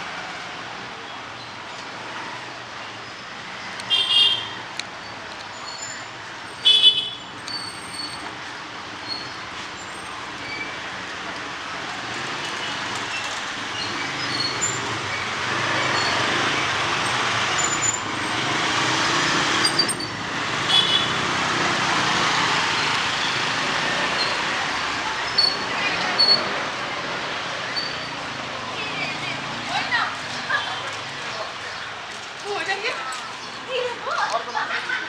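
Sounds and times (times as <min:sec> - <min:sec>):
vehicles passing on wet road: 0:00.0 - 0:35.0
car horn beep: 0:03.9 - 0:04.6, 0:06.6 - 0:07.2, 0:20.7 - 0:21.2.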